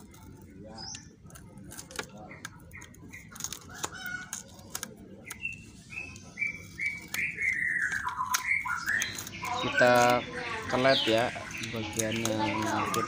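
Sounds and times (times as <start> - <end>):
bird singing whistled notes: 5.3 - 13.0.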